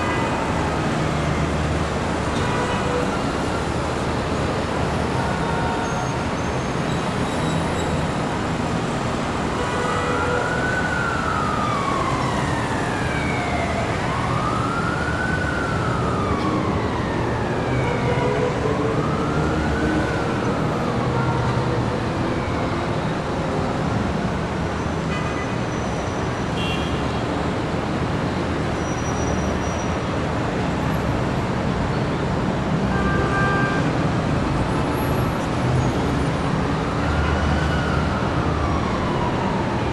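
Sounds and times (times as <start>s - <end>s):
emergency vehicle siren wailing: 0.0s - 25.1s, 26.0s - 39.9s
city traffic rumble: 0.0s - 39.9s.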